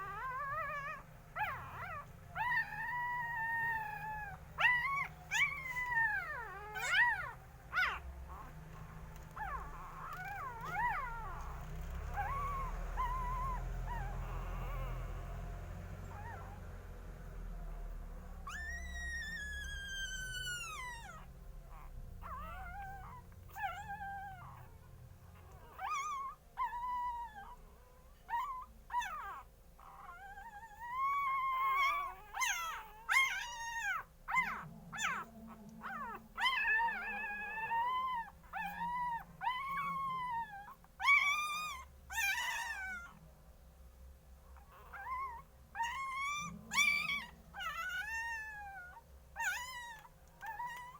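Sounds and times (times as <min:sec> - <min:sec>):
puppies whining and crying: 0:00.0 - 0:16.8, 0:17.6 - 0:43.3, 0:44.4 - 0:50.9.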